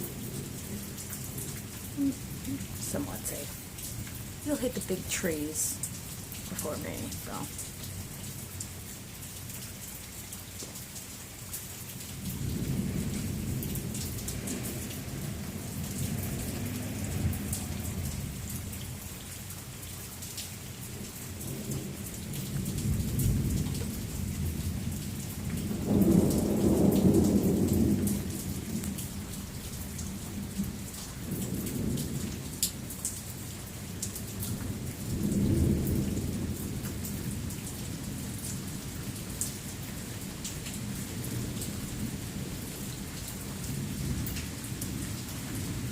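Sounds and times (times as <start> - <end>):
steady rain with drips: 0.0 - 45.9
low rolls of thunder: 12.1 - 19.0, 21.0 - 32.9, 33.5 - 39.2.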